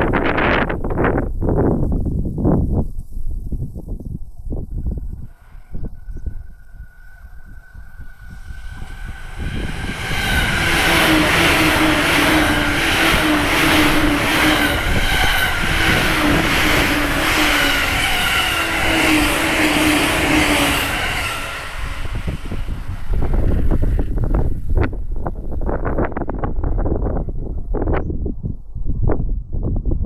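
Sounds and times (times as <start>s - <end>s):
electric train passing: 5.1s - 27.2s.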